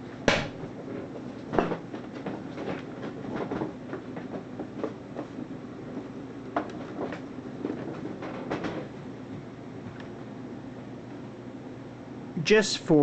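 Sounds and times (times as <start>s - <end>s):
sharp knocks on computer: 0.3s - 0.6s
small irregular clicks and rattles: 0.8s - 10.2s.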